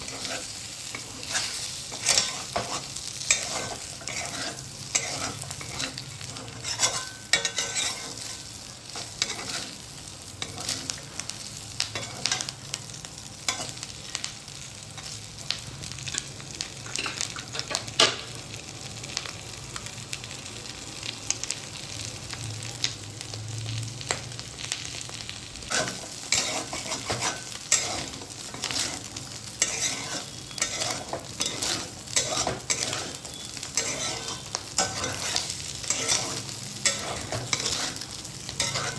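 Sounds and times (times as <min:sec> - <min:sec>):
spatula scraping a pan: 0:00.0 - 0:09.8, 0:10.4 - 0:11.0, 0:25.7 - 0:38.9
chicken sizzling in a pan: 0:00.0 - 0:38.9.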